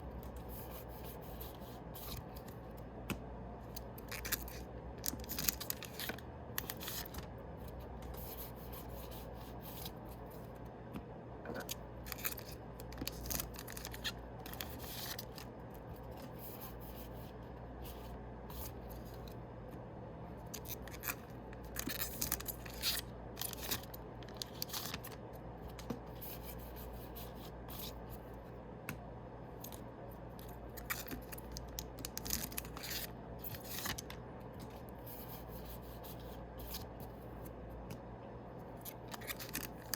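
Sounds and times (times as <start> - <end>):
foil wrappers and cards rasping: 3.8 - 7.2, 12.0 - 16.9, 20.6 - 25.2, 30.7 - 37.2, 38.9 - 39.9.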